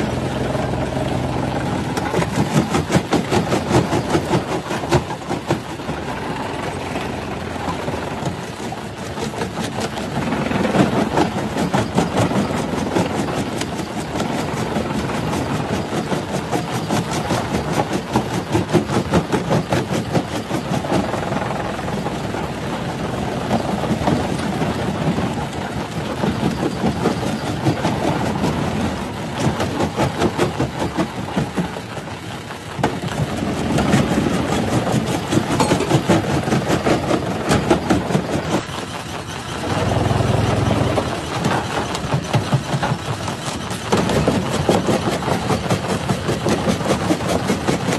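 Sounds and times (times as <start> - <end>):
jaw crusher machine noise: 0.0 - 47.9.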